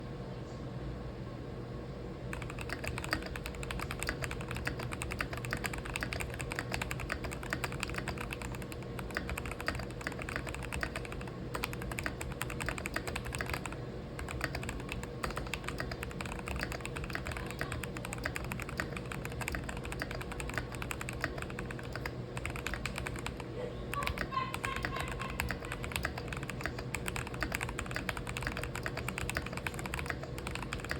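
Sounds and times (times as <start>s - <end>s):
faint steady hum: 0.0s - 30.9s
typing on mechanical keyboard: 2.3s - 30.9s.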